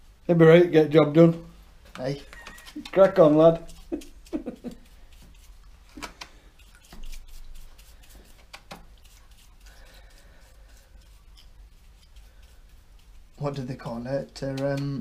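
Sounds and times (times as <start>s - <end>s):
small tools clicking and tapping: 1.9s - 4.9s.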